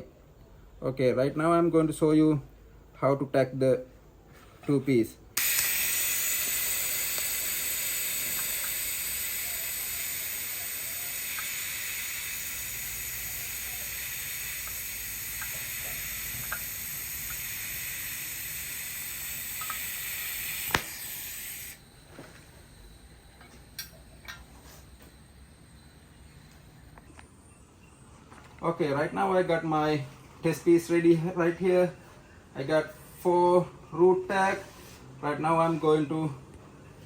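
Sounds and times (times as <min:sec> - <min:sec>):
welding arc hissing: 0:05.4 - 0:27.1.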